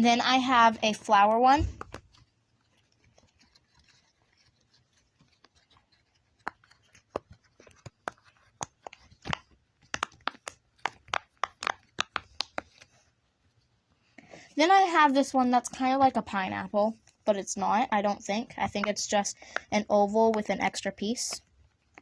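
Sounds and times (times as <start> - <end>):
fidget toy bubbles popping: 8.0 - 12.6.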